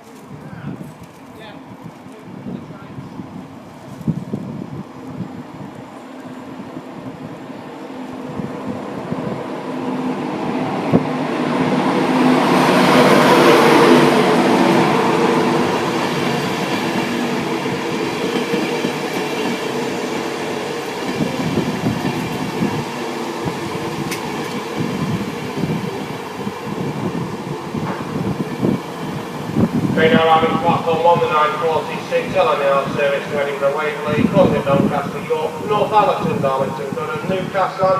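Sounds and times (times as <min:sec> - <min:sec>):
train running: 0:00.0 - 0:37.9.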